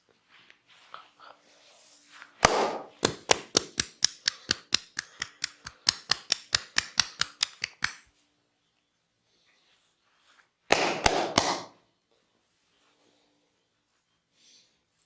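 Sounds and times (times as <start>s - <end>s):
hands slapping body: 2.4s - 8.1s, 10.7s - 11.8s.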